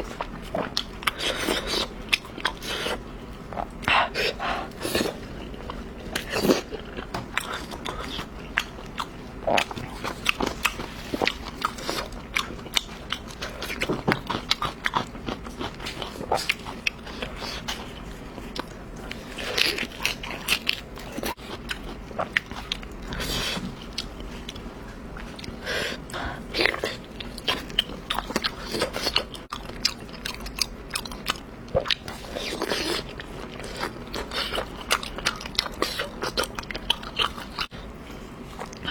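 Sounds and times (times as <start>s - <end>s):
person chewing food: 0.0s - 38.9s.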